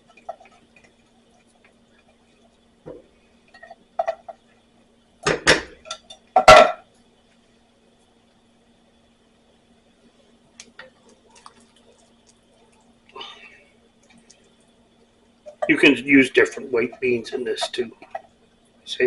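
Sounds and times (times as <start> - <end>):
metal clanking against iron pot: 5.3 - 6.8.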